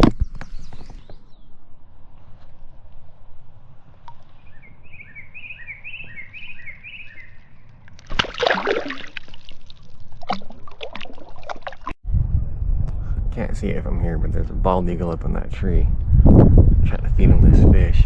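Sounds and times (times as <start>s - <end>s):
bird chirping: 4.3s - 7.7s
water splashing and sloshing: 7.8s - 12.0s.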